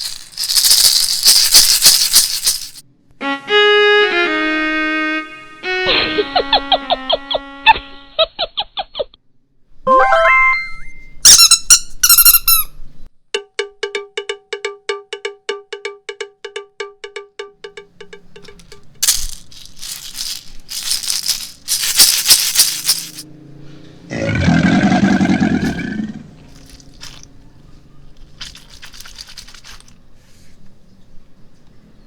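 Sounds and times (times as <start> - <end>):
cartoon squeaky sound effects: 9.9 - 12.9.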